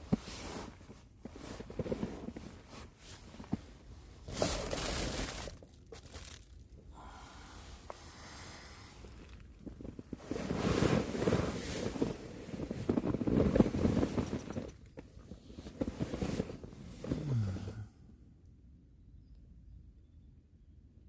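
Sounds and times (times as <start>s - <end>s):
wind gusts shaking a tent: 9.6s - 14.8s.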